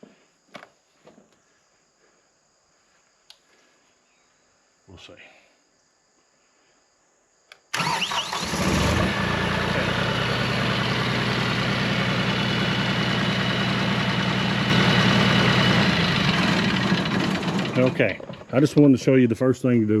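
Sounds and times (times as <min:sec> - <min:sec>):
small click: 0:03.2 - 0:03.5, 0:07.5 - 0:07.7
diesel engine cranking and idling: 0:07.8 - 0:18.9.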